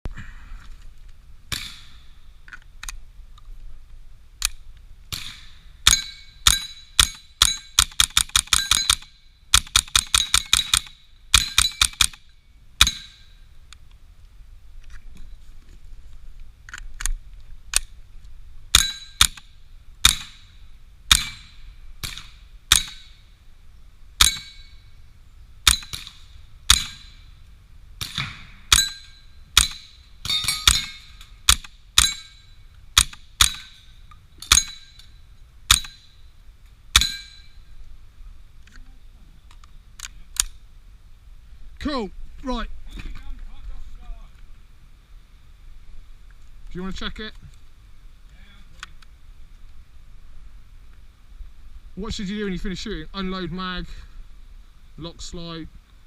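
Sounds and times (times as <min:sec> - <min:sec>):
suppressed rifle shots: 0:04.4 - 0:13.2, 0:18.7 - 0:20.5, 0:21.1 - 0:23.2, 0:28.0 - 0:32.3, 0:33.0 - 0:33.8, 0:35.7 - 0:36.1
steel target ringing: 0:05.3 - 0:07.8, 0:24.2 - 0:24.9, 0:28.2 - 0:31.3, 0:32.0 - 0:32.6, 0:33.4 - 0:36.2, 0:37.0 - 0:37.7.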